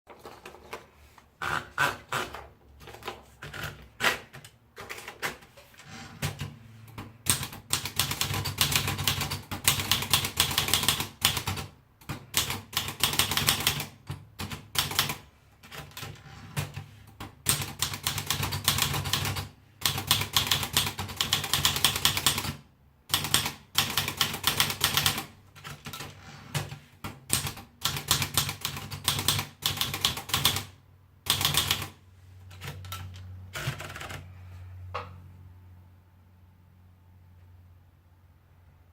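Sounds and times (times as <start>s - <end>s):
manual typewriter keystrokes: 6.2s - 34.3s.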